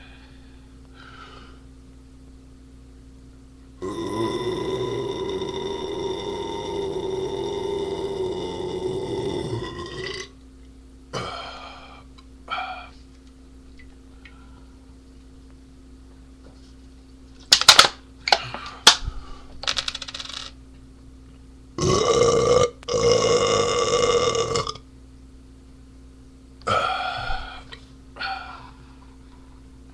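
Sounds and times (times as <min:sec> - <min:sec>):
man belching loudly: 0:03.8 - 0:10.3, 0:21.8 - 0:24.8.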